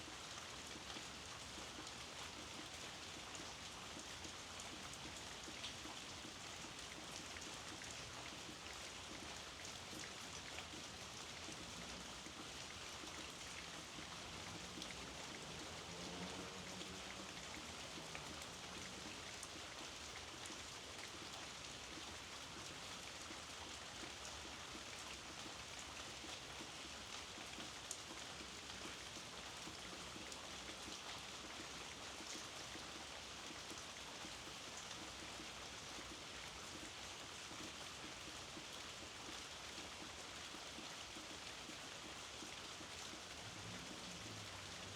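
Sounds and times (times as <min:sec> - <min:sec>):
steady soft rain: 0:00.0 - 0:44.9.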